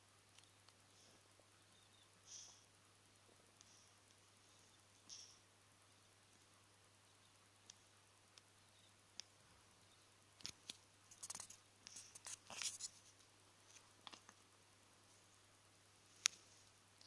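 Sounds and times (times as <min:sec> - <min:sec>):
faint clicks: 0:00.3 - 0:01.2, 0:03.6 - 0:04.3, 0:07.2 - 0:09.4, 0:16.2 - 0:17.0.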